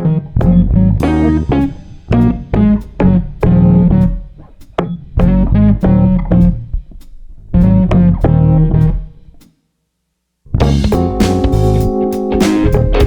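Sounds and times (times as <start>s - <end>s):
bass line: 0.0s - 4.4s, 5.1s - 6.8s, 7.5s - 9.2s, 10.5s - 13.0s
plucked guitar: 0.0s - 6.7s, 10.6s - 13.0s
drums: 0.0s - 9.6s, 10.5s - 13.0s.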